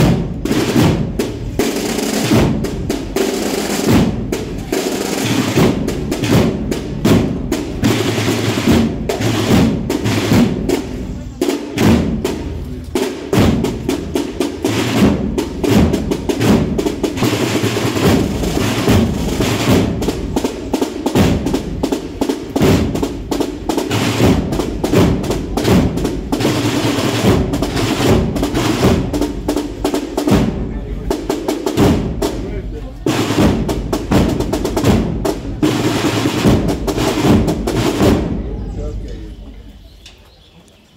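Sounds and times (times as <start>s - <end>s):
snare drum rolls: 0.0s - 38.5s
band playing a march: 0.0s - 39.5s.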